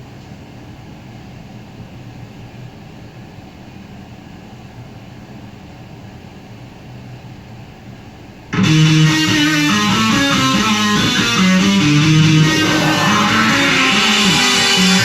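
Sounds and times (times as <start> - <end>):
band music with electric guitar: 8.6 - 15.0.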